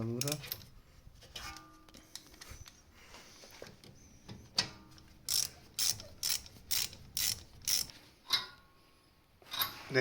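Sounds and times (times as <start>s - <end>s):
ratchet wrench clicking: 5.3s - 8.0s.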